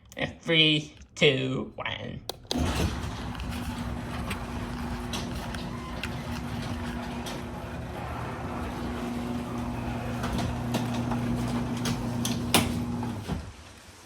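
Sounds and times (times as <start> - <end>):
door rattling along tracks: 2.6 - 13.5
garage door opener motor hum: 2.6 - 13.5.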